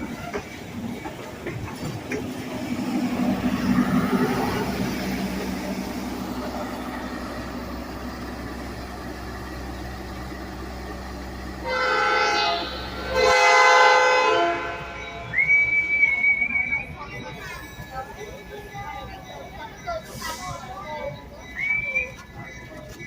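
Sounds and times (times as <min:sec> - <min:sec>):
idling train rumble: 0:00.0 - 0:23.0
train horn blasts: 0:11.6 - 0:15.4
high whistle tone: 0:14.5 - 0:23.0.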